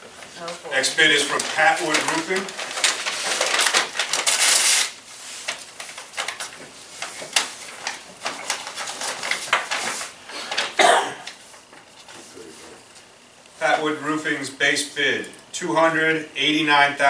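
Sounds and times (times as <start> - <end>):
paper rustling and crackling: 0.2 - 13.0.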